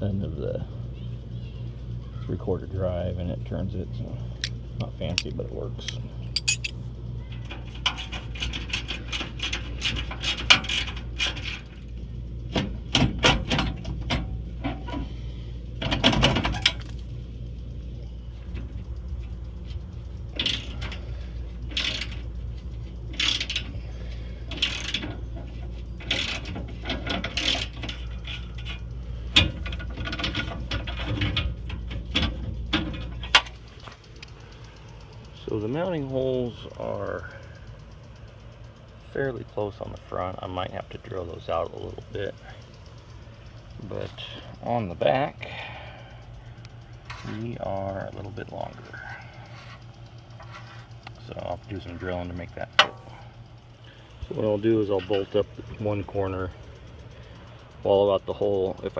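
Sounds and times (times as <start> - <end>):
steady low hum: 0.0 - 58.9
metal clicks and clanks: 4.4 - 11.9, 12.5 - 15.1, 15.8 - 17.2, 18.5 - 36.0, 46.2 - 57.9.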